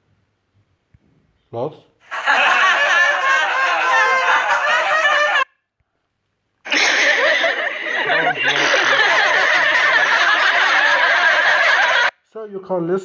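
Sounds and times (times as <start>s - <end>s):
crowd laughing: 2.0s - 5.6s, 6.6s - 12.2s.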